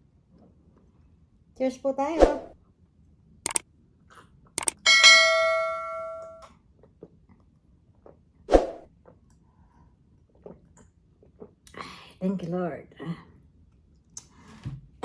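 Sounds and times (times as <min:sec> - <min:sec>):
glass clinking: 0:04.9 - 0:06.4.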